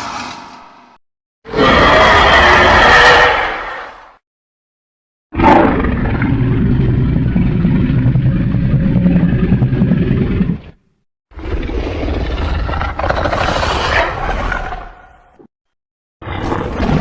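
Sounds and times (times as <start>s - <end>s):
monster roar: 1.5s - 4.1s, 11.4s - 15.2s.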